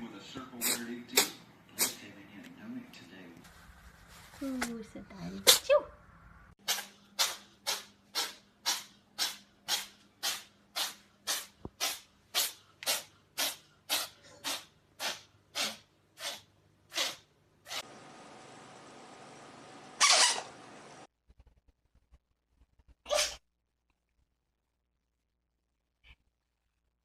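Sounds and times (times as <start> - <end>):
cat sneezing: 0.6 - 2.0, 6.6 - 17.8, 23.1 - 23.4.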